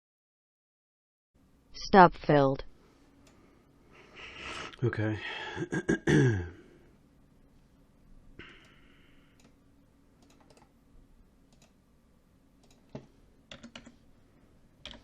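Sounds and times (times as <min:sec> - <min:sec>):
computer keyboard clicks: 0:09.4 - 0:09.6, 0:10.2 - 0:10.7, 0:11.5 - 0:11.8, 0:12.6 - 0:14.0.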